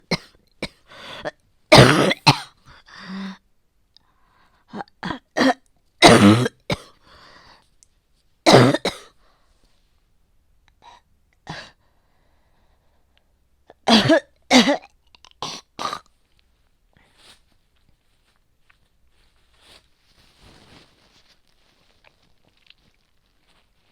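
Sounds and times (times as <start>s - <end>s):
person coughing hard: 0.0s - 2.6s, 4.8s - 7.0s, 8.5s - 9.1s, 13.8s - 16.0s.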